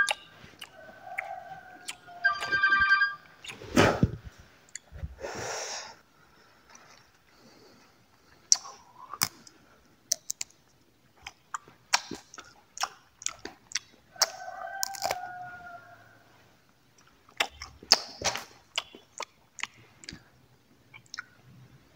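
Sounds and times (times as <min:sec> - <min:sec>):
dry fruit being chewed: 0:00.0 - 0:02.5, 0:08.4 - 0:15.3, 0:16.9 - 0:20.3, 0:20.9 - 0:21.4
brief steady tone: 0:02.2 - 0:03.2
breathy exhale: 0:05.2 - 0:06.6.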